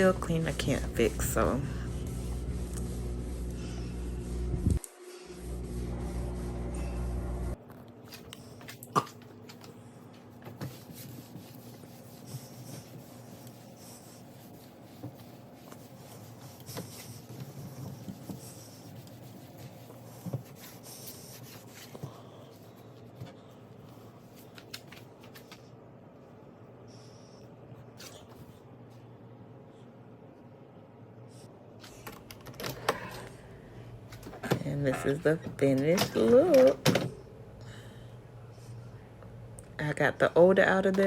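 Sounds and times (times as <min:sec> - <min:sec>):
cloth wiping steel surface: 0:00.0 - 0:07.2
steady hum: 0:00.0 - 0:07.7.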